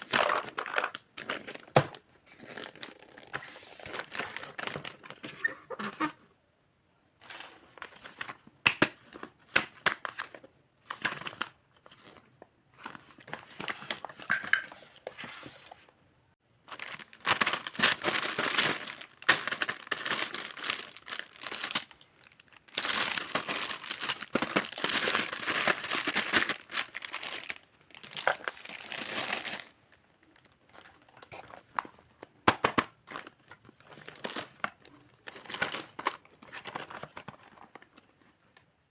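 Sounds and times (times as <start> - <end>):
packaging crinkling and tearing: 0.0 - 6.0, 16.7 - 38.2.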